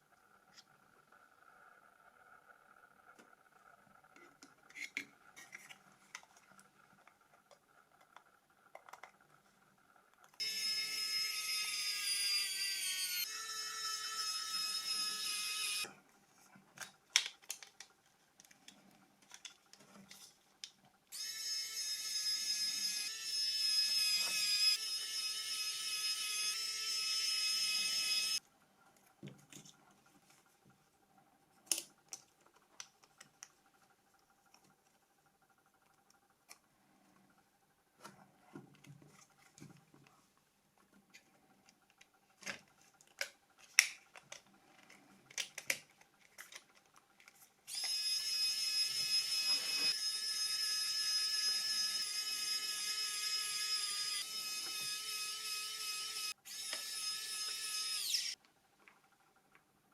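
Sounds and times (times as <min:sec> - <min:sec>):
electric tool motor whining: 0:10.4 - 0:15.9, 0:21.2 - 0:28.4, 0:47.7 - 0:58.4.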